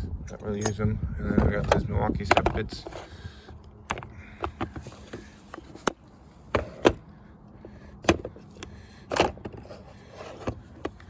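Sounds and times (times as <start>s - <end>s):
metal bits clacking: 0.3s - 1.0s
tools rattling: 0.3s - 1.0s.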